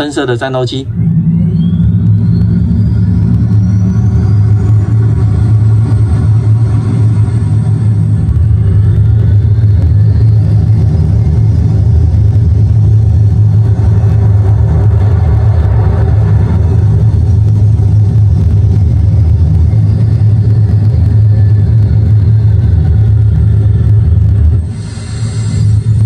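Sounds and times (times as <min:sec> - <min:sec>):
high jet whine: 0:00.0 - 0:26.0
simulated jet engine rumble: 0:00.0 - 0:26.0.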